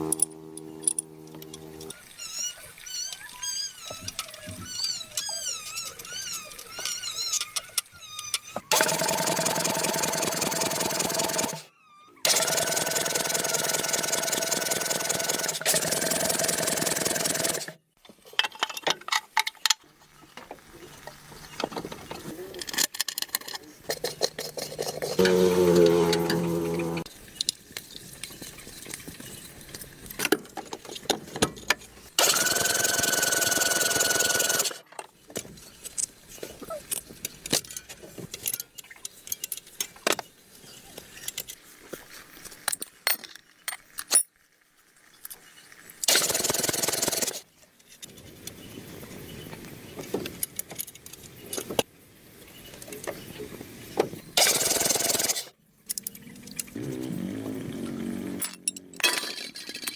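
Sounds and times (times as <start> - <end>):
power tool whining: 0.0 - 1.9, 25.2 - 27.1
tools clinking and knocking: 18.3 - 19.9, 21.6 - 25.4, 58.4 - 59.9.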